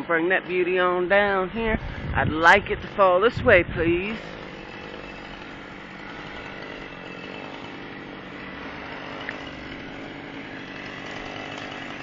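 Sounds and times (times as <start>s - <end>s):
chainsaw cutting tree: 3.9s - 12.0s.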